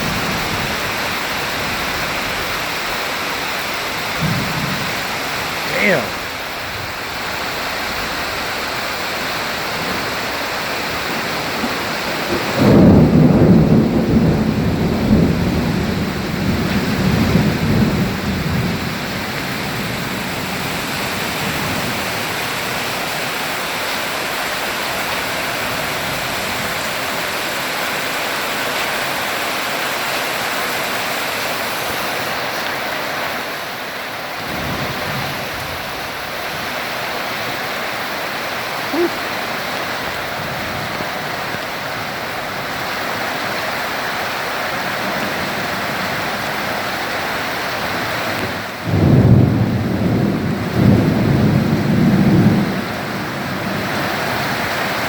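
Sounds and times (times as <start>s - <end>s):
thunder rumbling: 0.0s - 29.7s, 38.0s - 55.0s
steady rain falling: 0.0s - 55.0s.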